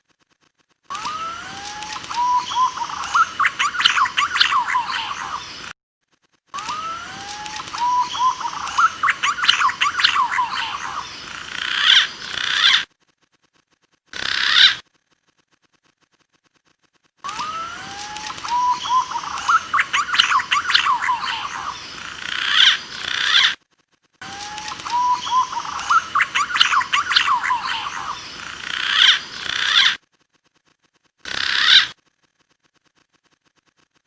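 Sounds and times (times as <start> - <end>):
whistled pigeon call: 0.9 - 5.4, 6.6 - 11.0, 17.3 - 21.8, 24.4 - 28.2.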